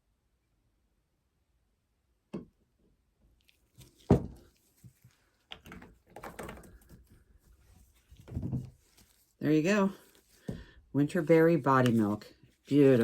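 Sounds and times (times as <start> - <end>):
clattering handling noises: 3.8 - 9.2.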